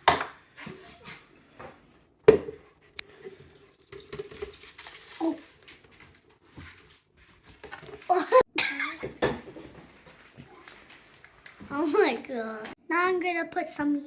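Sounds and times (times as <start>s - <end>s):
batter pouring: 2.7s - 6.2s.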